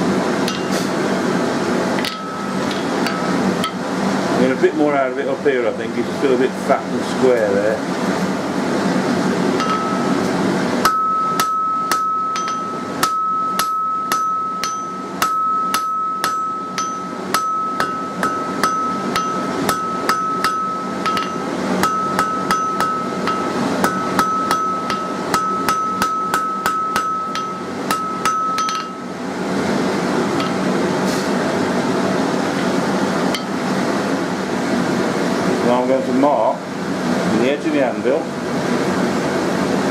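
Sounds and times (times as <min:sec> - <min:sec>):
hammer striking steel on anvil: 0:00.5 - 0:00.8, 0:02.0 - 0:03.8, 0:09.6 - 0:29.0, 0:30.4 - 0:30.7, 0:33.3 - 0:33.6
anvil ringing: 0:02.0 - 0:03.8, 0:09.6 - 0:10.2, 0:10.8 - 0:29.0.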